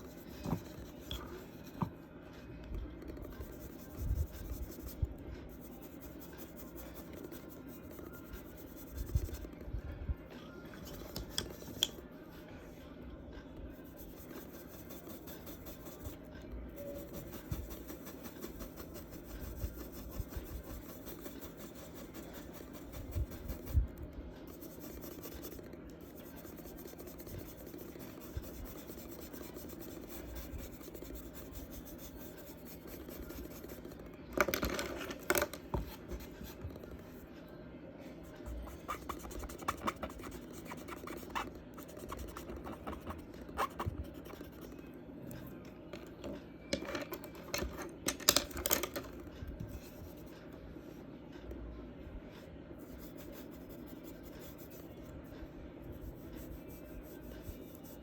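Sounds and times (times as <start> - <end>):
charcoal scratching on paper: 0.0 - 1.9, 3.0 - 9.6, 13.8 - 34.1, 38.4 - 44.7, 52.8 - 55.0, 56.0 - 58.0.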